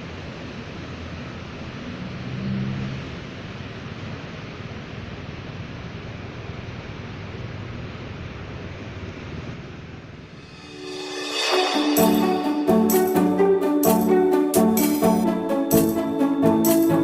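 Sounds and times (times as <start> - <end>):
rushing hiss: 10.4 - 13.5.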